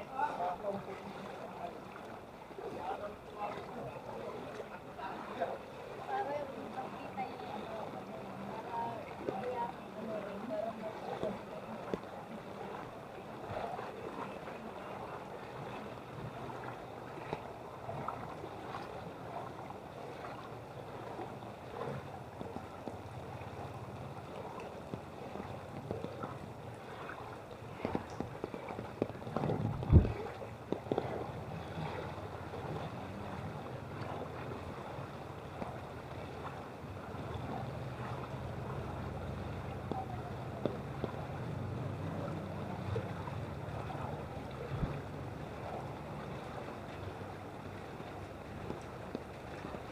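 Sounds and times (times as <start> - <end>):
low steady hum: 0.0 - 49.9
water sloshing while wading: 0.0 - 49.9.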